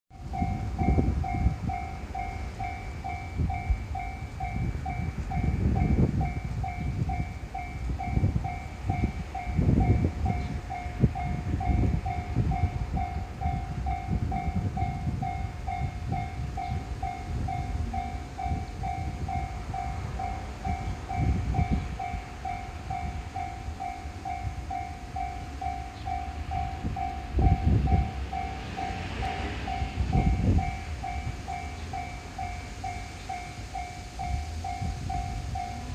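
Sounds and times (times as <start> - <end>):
level crossing bell ringing: 0.3 - 35.9.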